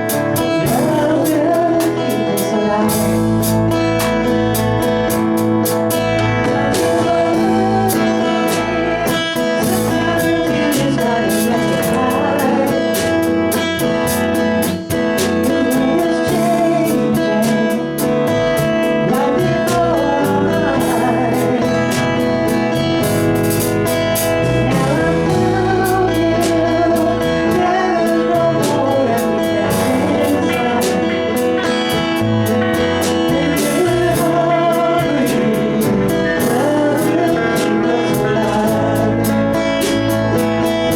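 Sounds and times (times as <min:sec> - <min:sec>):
guitar: 0:00.0 - 0:40.9
live band playing: 0:00.0 - 0:40.9
person singing: 0:00.0 - 0:40.9.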